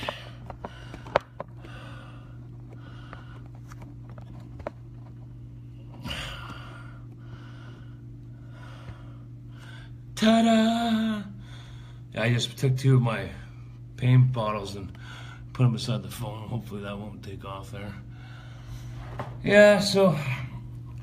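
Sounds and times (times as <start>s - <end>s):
breathing close to microphone: 0.0s - 3.6s, 6.0s - 10.0s, 11.4s - 12.1s, 18.1s - 19.2s.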